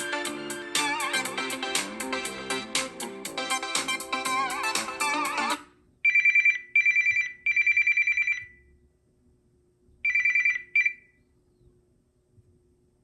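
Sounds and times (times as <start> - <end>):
phone ringtone trilling bell: 6.1 - 8.6, 10.1 - 11.0.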